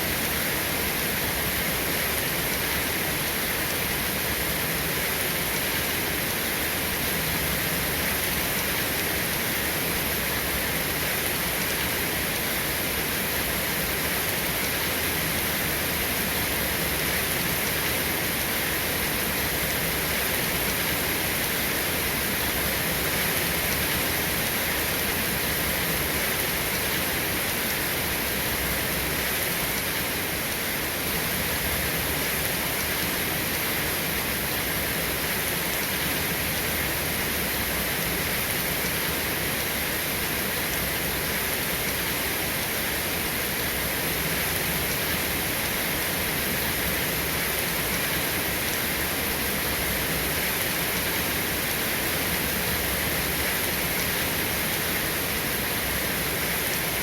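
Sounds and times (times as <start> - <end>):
rain falling steadily: 0.0 - 57.0.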